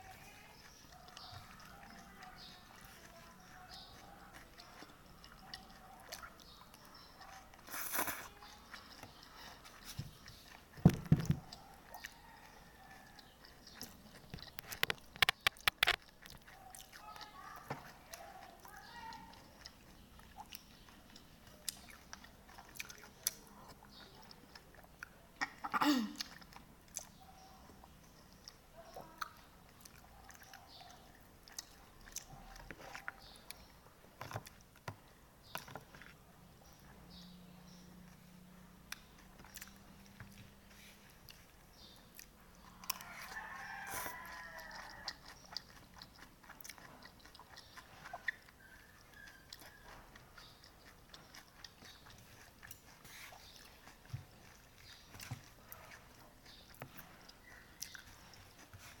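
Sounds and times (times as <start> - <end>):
chewing and slurping noodles: 0.0 - 25.6, 26.2 - 59.0
small mouth clicks and smacks: 13.2 - 37.0, 37.7 - 59.0
rooster crowing: 43.0 - 45.2.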